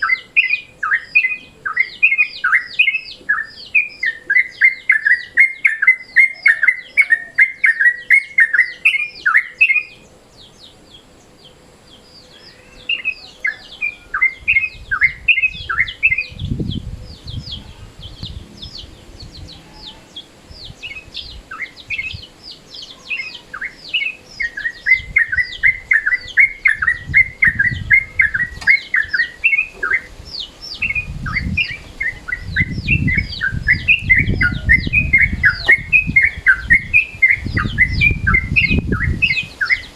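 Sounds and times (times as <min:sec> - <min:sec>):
bird chirping: 0:00.0 - 0:39.9
low rumbling noise: 0:14.7 - 0:22.5.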